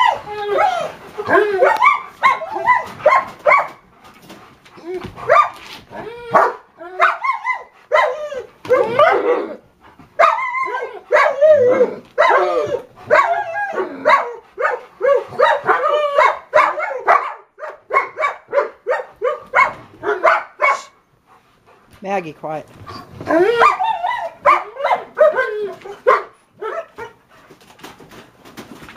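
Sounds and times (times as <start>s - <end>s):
dog barking and yipping: 0.0s - 3.9s, 4.8s - 5.7s, 6.3s - 9.6s, 10.2s - 21.0s, 22.9s - 27.2s.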